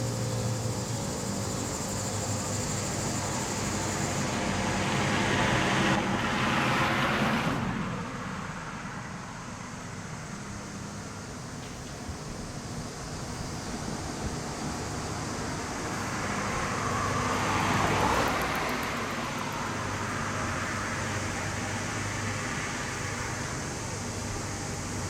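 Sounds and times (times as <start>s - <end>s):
vehicle passing by: 2.2s - 9.0s, 14.2s - 25.0s.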